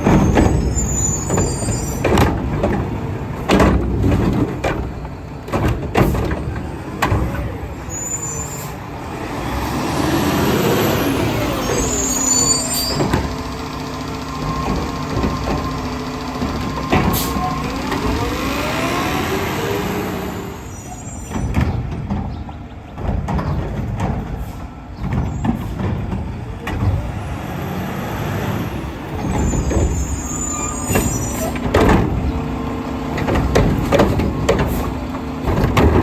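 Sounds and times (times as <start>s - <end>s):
knocks and clatter: 0.0s - 7.5s, 11.3s - 19.0s, 21.3s - 27.3s, 29.1s - 36.0s
garbage truck engine revving: 0.0s - 22.1s, 22.8s - 36.0s.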